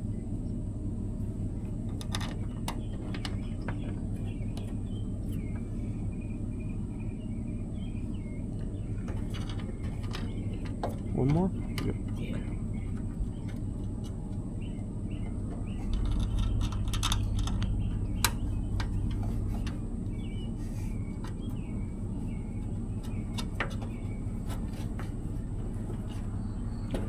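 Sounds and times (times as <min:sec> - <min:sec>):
steady low hum: 0:00.0 - 0:27.0
metallic clicks of screws and tools: 0:15.9 - 0:19.8.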